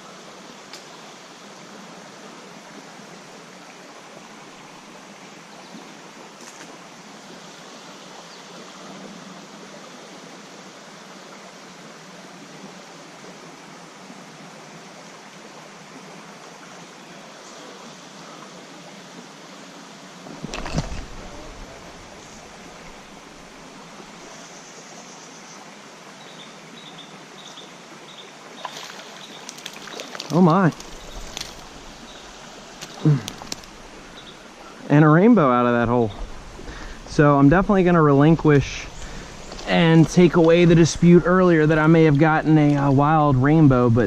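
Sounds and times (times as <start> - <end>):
stream water flowing: 0.0 - 44.0
deep thump or splash: 20.4 - 23.1.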